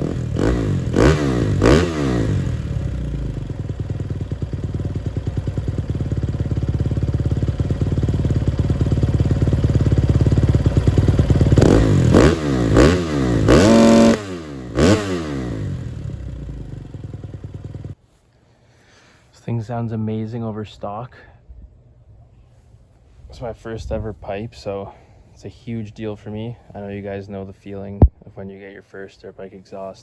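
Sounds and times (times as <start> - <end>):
dirt bike engine idling and revving: 0.0 - 18.0.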